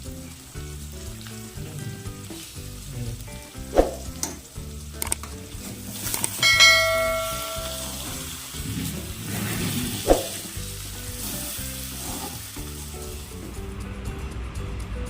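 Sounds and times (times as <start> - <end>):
chicken sizzling in a pan: 0.0 - 13.8
utensil clicking against pan: 4.1 - 6.4
metal utensil striking ringing pan: 6.4 - 8.4.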